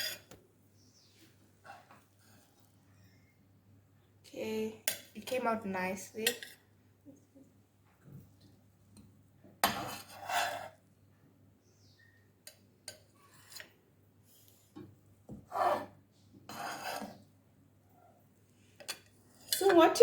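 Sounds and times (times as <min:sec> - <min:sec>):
utensil scraping dishware: 0:00.0 - 0:00.3, 0:09.6 - 0:10.8, 0:15.5 - 0:15.9, 0:16.5 - 0:17.2.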